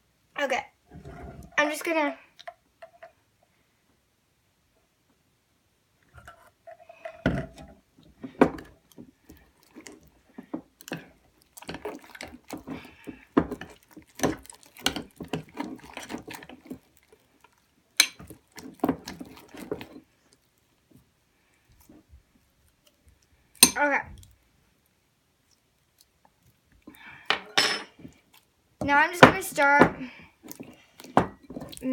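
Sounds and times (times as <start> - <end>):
wet slime squishes: 8.6 - 27.0, 28.0 - 31.9.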